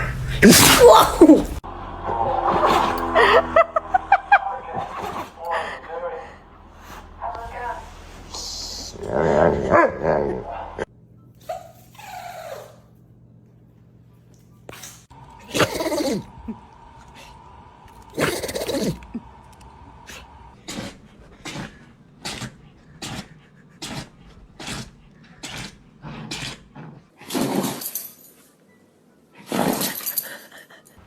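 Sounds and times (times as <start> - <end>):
dogs sneezing: 0.4 - 1.6, 11.4 - 12.9, 14.7 - 17.3, 17.9 - 19.4, 27.2 - 28.1, 29.4 - 30.2.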